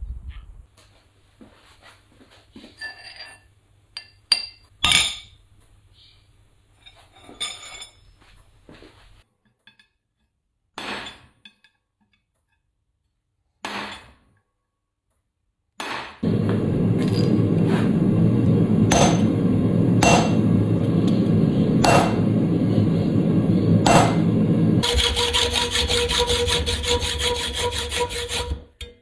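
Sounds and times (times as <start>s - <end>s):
low steady hum: 16.2s - 27.0s.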